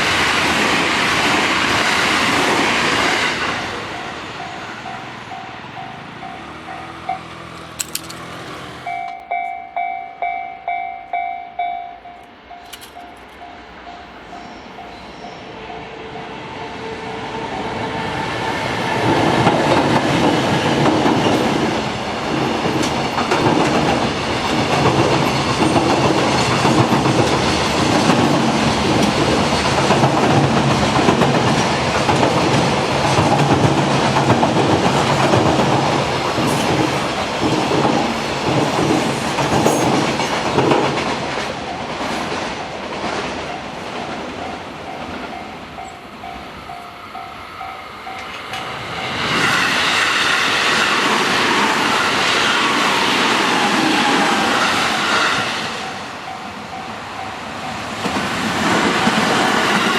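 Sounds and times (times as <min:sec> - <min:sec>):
crossing warning bell ringing: 0:03.3 - 0:18.2, 0:18.9 - 0:49.4, 0:54.9 - 0:58.3
train wheels clattering over rail joints: 0:05.8 - 0:09.3, 0:12.5 - 0:13.5, 0:19.0 - 0:46.0.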